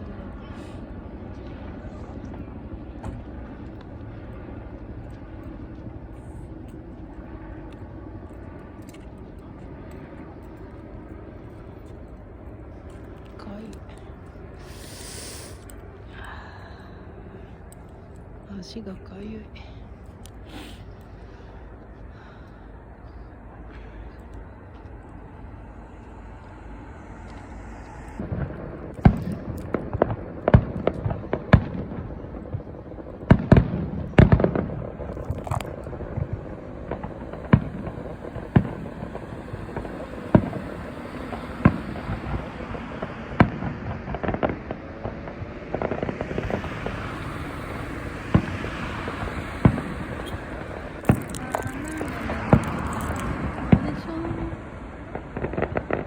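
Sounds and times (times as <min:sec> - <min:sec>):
crackling sparks: 0:00.0 - 0:21.2, 0:24.1 - 0:56.0
fireworks bangs: 0:27.0 - 0:56.0.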